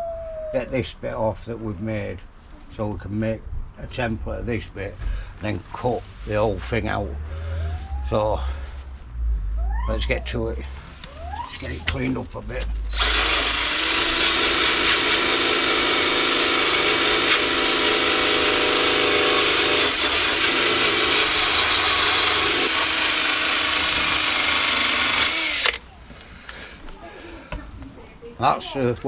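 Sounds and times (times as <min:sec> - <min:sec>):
power drill scouring metal: 0:12.9 - 0:25.8.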